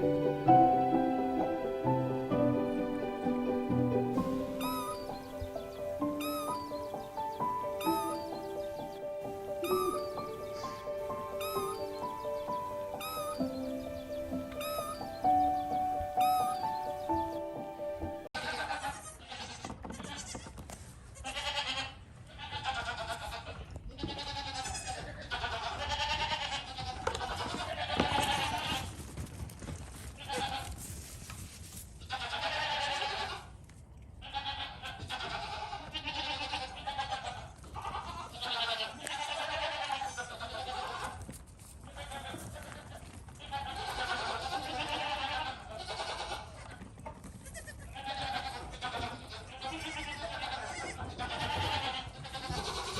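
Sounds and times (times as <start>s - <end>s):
goat bleating: 4.3s - 8.8s, 9.6s - 15.6s, 16.2s - 16.6s, 18.4s - 20.6s, 21.2s - 28.9s, 30.2s - 30.8s, 32.0s - 33.6s, 34.2s - 41.2s, 41.9s - 52.9s.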